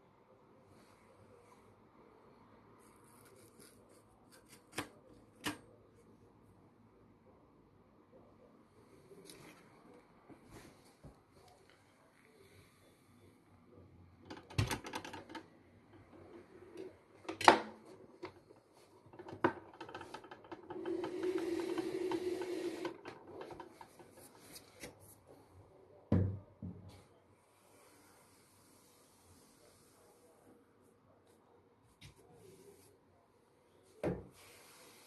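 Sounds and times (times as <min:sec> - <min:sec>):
objects knocking and rattling: 0:14.2 - 0:24.5
vacuum cleaner motor whirring: 0:19.2 - 0:24.0.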